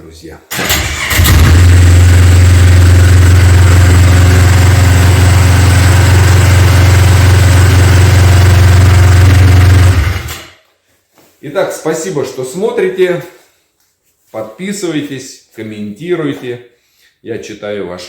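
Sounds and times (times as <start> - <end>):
snowmobile engine idling: 1.2 - 10.3.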